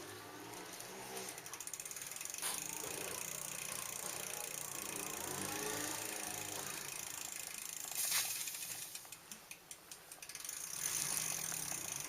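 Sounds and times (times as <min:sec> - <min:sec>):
bicycle drivetrain ticking: 0:00.0 - 0:12.0
bicycle bump: 0:00.6 - 0:09.2.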